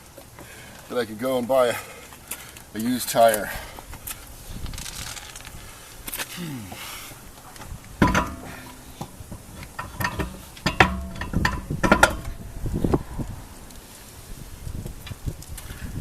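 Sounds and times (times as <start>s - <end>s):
sharp ringing knocks: 8.0s - 9.2s, 9.8s - 12.5s
metallic clanks of wheel fitting: 8.0s - 12.7s.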